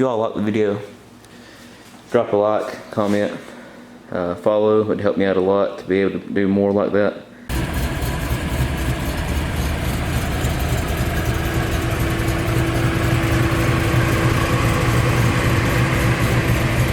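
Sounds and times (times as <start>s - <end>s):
car engine running: 7.5s - 16.9s
steady hum: 7.5s - 16.9s.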